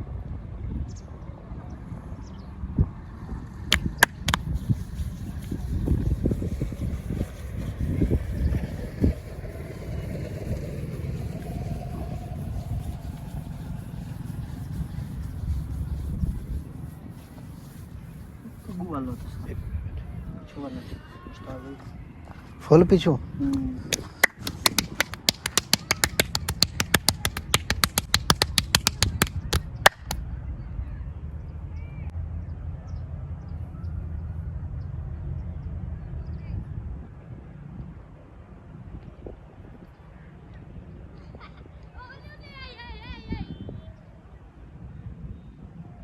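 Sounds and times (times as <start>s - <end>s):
vehicle engine rumbling: 3.4s - 20.4s
hands tapping and slapping on body: 3.7s - 4.8s, 23.9s - 30.2s.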